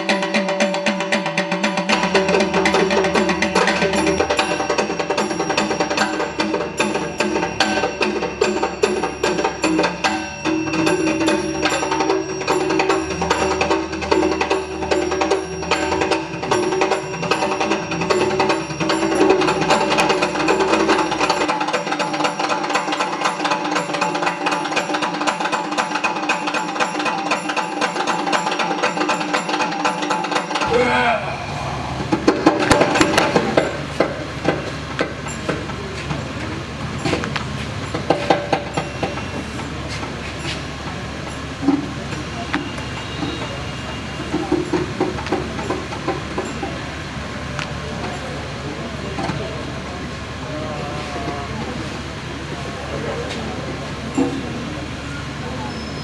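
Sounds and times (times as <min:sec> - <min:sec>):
fast drumming: 0:00.0 - 0:31.1, 0:31.8 - 0:35.9
hand cymbals ringing: 0:00.0 - 0:49.6.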